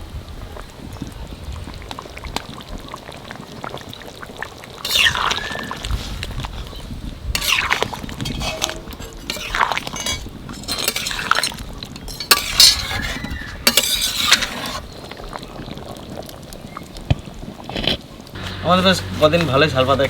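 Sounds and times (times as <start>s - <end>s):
metal spoon clinking against pot: 7.4s - 14.8s.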